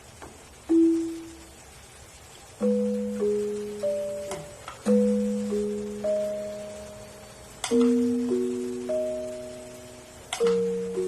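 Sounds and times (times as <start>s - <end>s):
electronic keyboard notes: 0.6s - 1.6s, 2.6s - 11.0s.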